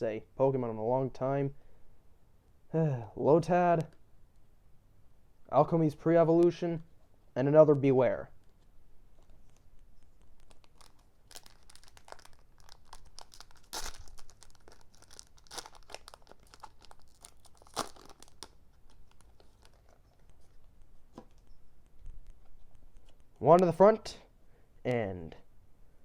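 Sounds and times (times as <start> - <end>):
foil wrapper crinkling: 9.2 - 20.6
foil ripping: 10.4 - 19.8.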